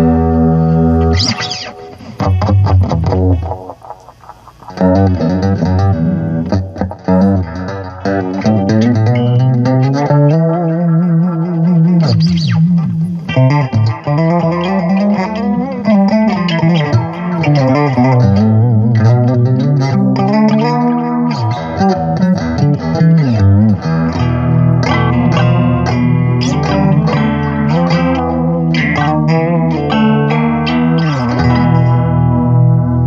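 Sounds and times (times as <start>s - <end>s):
electric guitar notes and chords: 0.0s - 33.0s.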